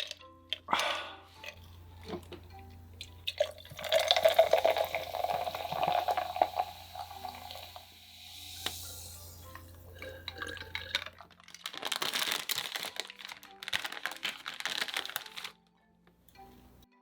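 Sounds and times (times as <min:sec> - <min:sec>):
liquid pouring with splashes: 0:03.0 - 0:12.5.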